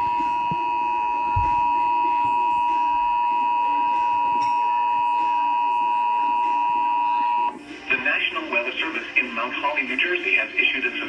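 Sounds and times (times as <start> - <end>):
two-tone electronic alert tone: 0.0 - 7.6.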